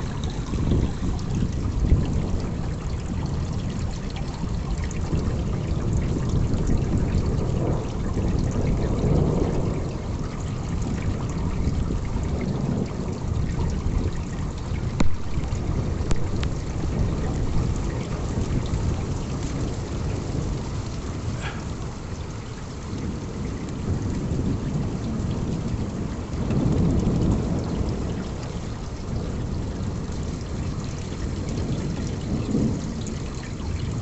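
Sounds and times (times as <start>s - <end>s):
heavy rain: 0.0s - 34.0s
water trickling: 0.0s - 34.0s.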